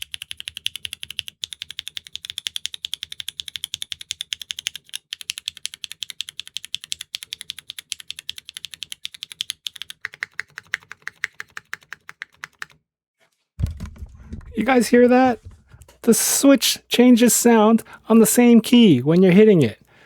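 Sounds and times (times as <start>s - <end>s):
mechanical keyboard clacking: 0.0s - 12.8s.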